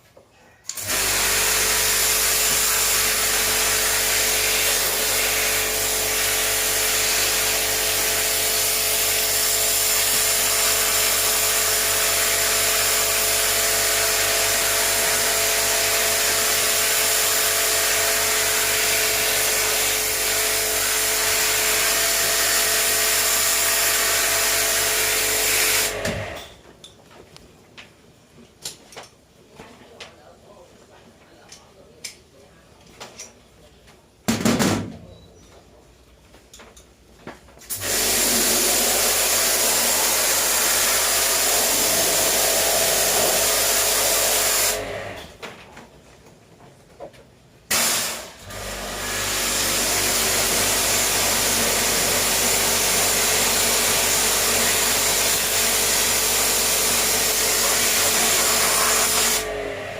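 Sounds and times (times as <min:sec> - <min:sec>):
pressure washer spraying: 0:00.7 - 0:26.0, 0:37.7 - 0:44.9, 0:47.7 - 0:59.6.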